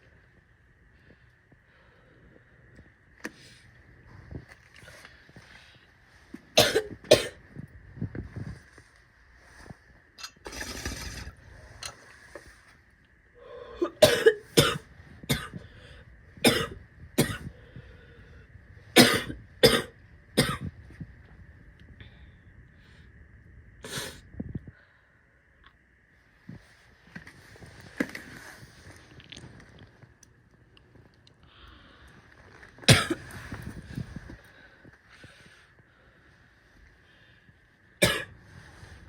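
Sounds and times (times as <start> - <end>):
woman coughing: 6.6 - 7.4, 13.8 - 15.6, 16.4 - 17.5, 19.0 - 20.7, 32.9 - 33.2, 38.0 - 38.3.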